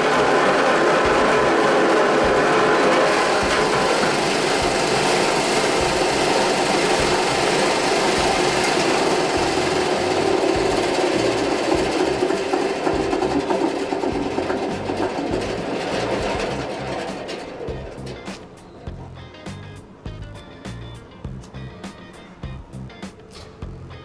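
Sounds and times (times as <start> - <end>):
vibrating sieve hum and rattle: 0.0 - 21.8.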